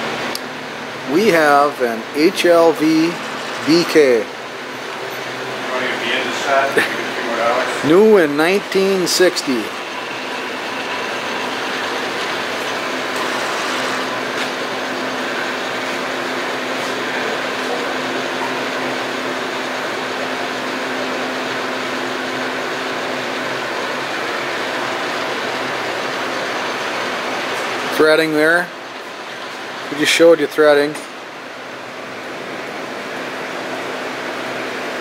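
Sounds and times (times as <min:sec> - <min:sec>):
lathe cutting a thread: 0:01.2 - 0:17.2.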